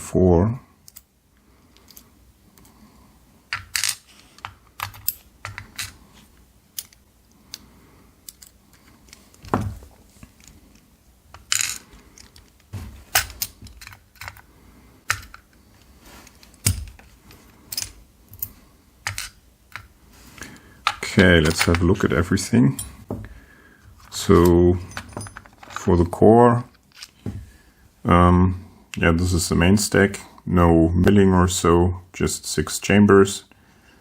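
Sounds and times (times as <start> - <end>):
small metal lock parts clicking: 3.5 - 6.0, 6.8 - 7.0, 17.7 - 19.9.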